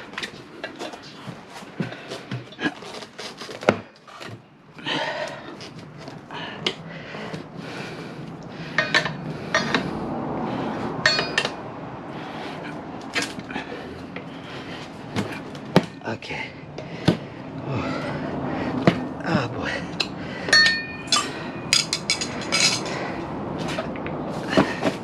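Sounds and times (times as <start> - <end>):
ringing metal strikes: 11.0 - 11.5, 20.5 - 22.0.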